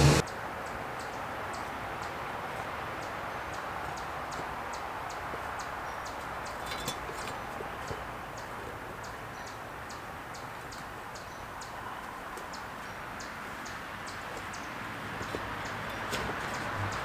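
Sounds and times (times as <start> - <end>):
outdoor hiss: 0.0 - 0.5.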